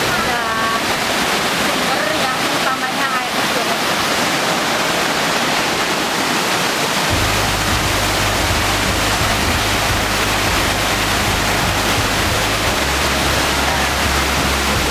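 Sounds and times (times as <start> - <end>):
waterfall rushing: 0.0 - 14.9
low rumble: 7.1 - 14.9.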